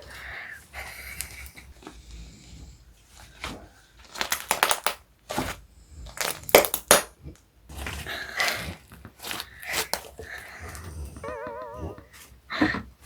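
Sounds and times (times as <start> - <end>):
slime materials crinkling and crunching: 3.3 - 7.1, 7.7 - 10.8.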